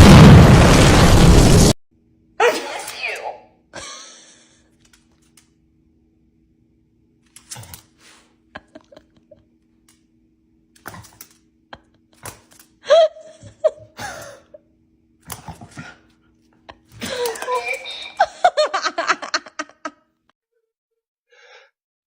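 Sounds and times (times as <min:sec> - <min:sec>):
high-pitched vocal sound: 0:17.0 - 0:18.4.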